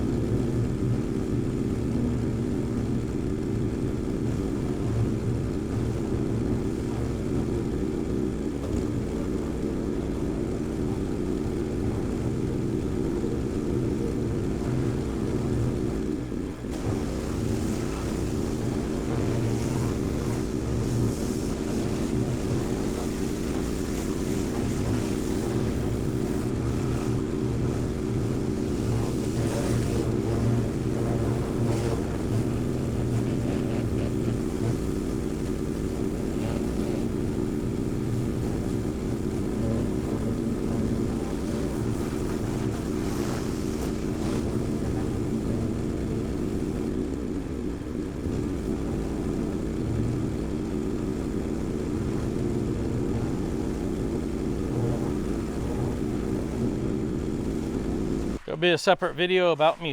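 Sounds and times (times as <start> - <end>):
engine running steadily: 0.0 - 58.5
hiss: 16.7 - 46.8, 49.4 - 58.4.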